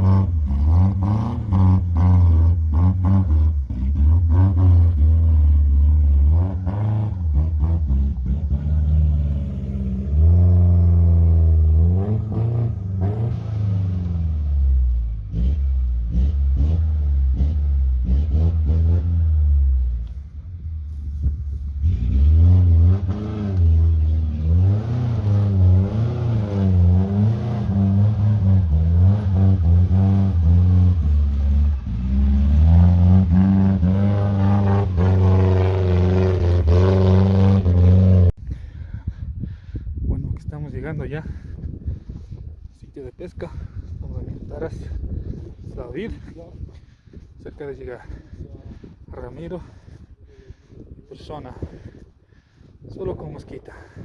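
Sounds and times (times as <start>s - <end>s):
vehicle engine revving: 0.0s - 38.4s.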